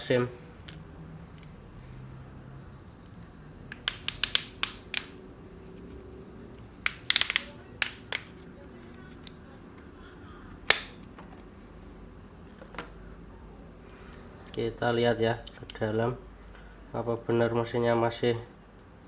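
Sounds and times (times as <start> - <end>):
phone being handled clicking: 3.7 - 5.2, 6.9 - 8.3, 10.7 - 11.0.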